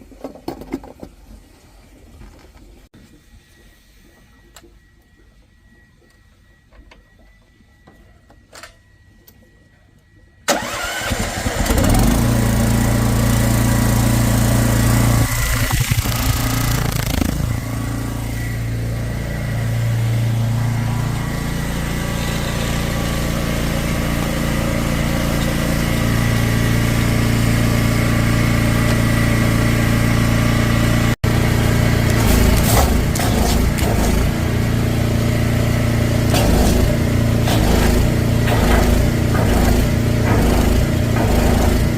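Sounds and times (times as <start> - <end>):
drain jetter engine running: 10.5 - 41.9.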